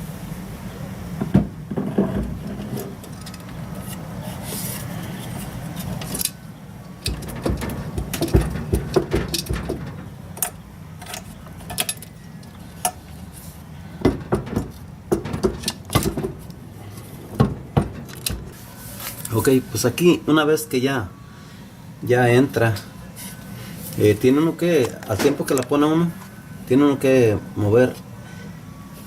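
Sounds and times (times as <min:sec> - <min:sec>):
rustling noise: 0:02.4 - 0:06.2, 0:18.0 - 0:19.6
metal parts clinking: 0:07.0 - 0:13.0.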